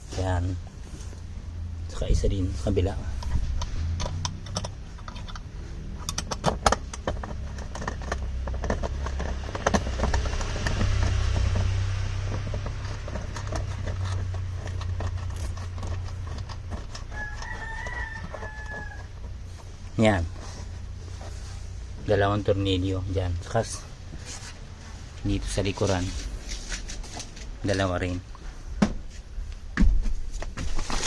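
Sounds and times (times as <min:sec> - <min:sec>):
steady low rumble: 0:00.0 - 0:17.4, 0:18.6 - 0:30.9
hand tool clicking and rattling: 0:03.1 - 0:19.3
rooster crowing: 0:16.8 - 0:19.4.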